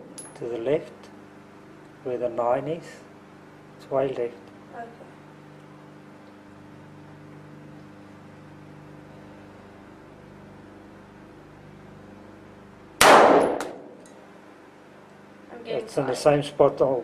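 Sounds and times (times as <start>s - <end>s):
steady low hum: 0.0s - 17.0s
gunshot crack: 13.0s - 14.0s.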